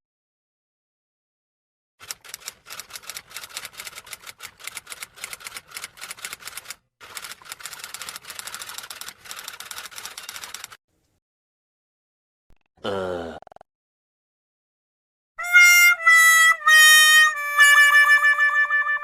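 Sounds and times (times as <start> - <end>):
rapid typing clicks: 2.0 - 10.8.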